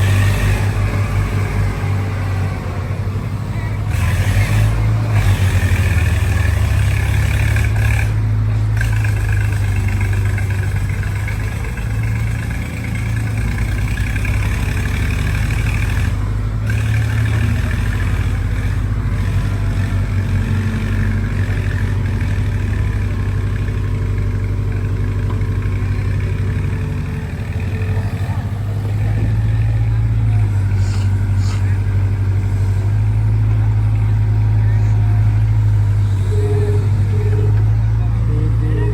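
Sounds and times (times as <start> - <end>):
heavy diesel engines running: 0.0 - 38.9.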